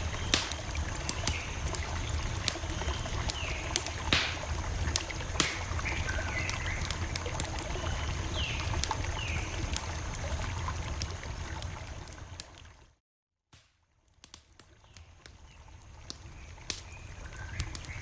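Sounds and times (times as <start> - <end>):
campfire crackling: 0.0 - 12.9, 13.6 - 18.0
wood popping and snapping: 5.3 - 5.8.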